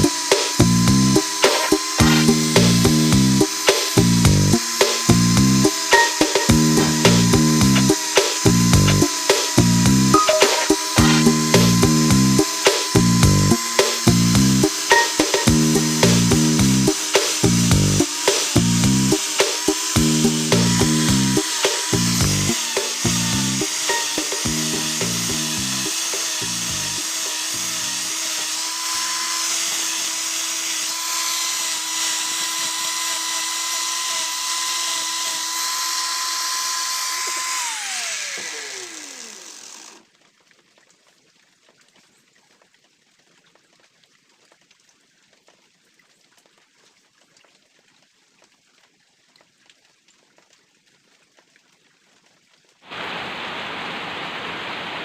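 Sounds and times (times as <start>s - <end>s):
power tool motor running: 0.0s - 40.0s
steady hiss: 52.8s - 55.0s.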